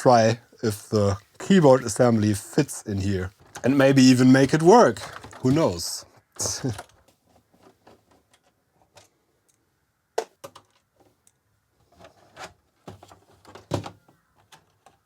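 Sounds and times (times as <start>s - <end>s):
plastic case and keyboard clicks: 4.4s - 9.1s.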